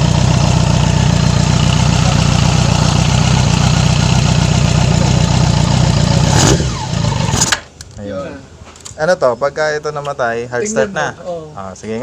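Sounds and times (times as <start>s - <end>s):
motorcycle engine idling: 0.0s - 7.5s.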